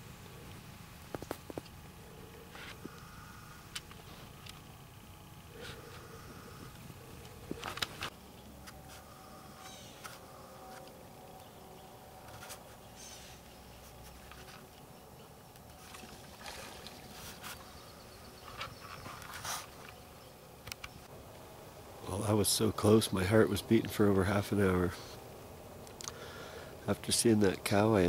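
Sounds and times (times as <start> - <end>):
soft rustles and clicks: 6.6 - 9.0.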